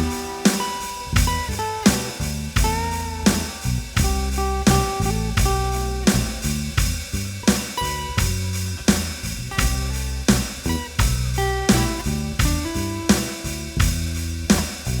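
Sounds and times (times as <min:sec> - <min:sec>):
strummed acoustic guitar: 0:00.0 - 0:10.0
bass guitar: 0:00.0 - 0:15.0.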